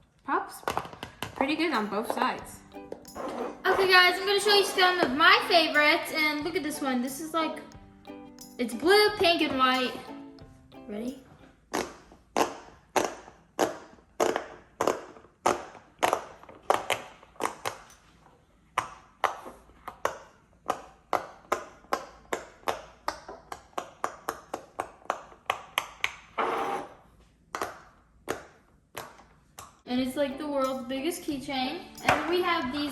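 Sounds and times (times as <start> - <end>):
fidget toy bubbles popping: 11.7 - 17.8.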